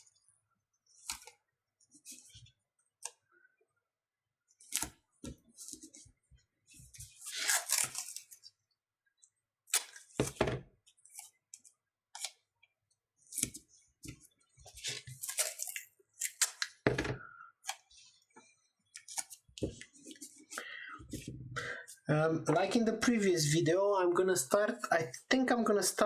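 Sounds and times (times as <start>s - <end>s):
crackling rustling handling noise: 13.2s - 16.8s.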